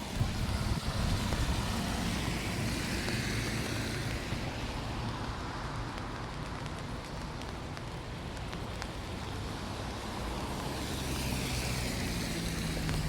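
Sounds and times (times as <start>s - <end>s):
car tyres hissing on wet road: 0.0s - 13.0s
low traffic rumble: 0.0s - 13.0s
rain falling: 0.0s - 13.0s.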